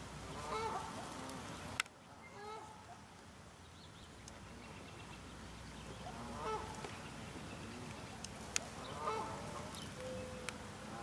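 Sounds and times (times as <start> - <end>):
geese honking: 0.4 - 1.4, 2.2 - 2.8, 6.0 - 6.9, 7.5 - 11.0.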